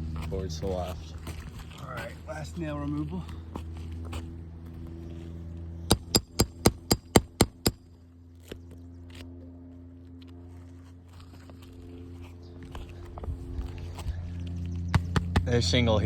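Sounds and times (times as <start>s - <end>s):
hammer striking metal tool: 5.9s - 7.9s.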